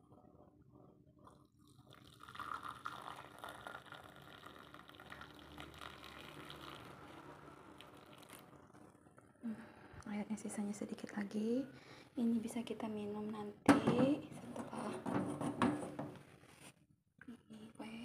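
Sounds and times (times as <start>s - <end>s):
liquid pouring into a glass: 1.3s - 8.8s.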